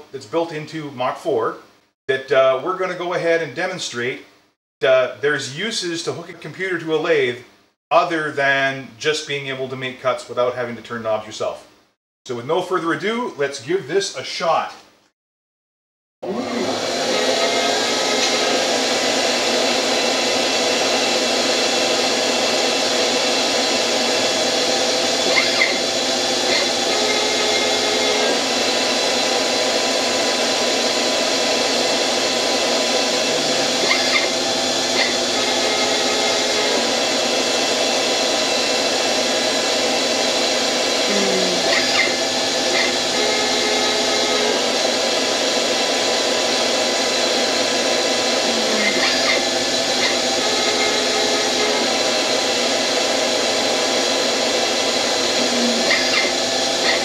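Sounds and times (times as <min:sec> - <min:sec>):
lathe machine whine: 0:16.2 - 0:57.0.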